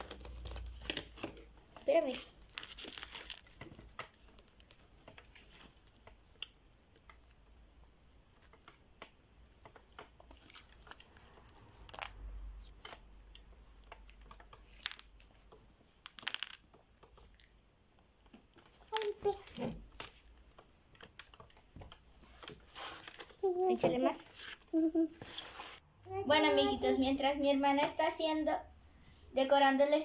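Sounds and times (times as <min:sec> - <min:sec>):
hands handling slime crinkling: 0:00.0 - 0:07.4, 0:10.0 - 0:17.6, 0:18.2 - 0:20.4.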